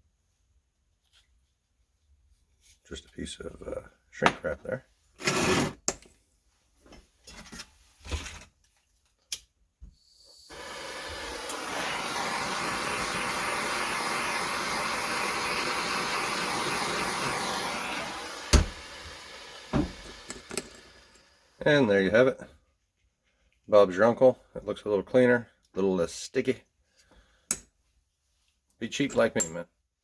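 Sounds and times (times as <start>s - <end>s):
heat gun blowing: 10.0s - 21.6s.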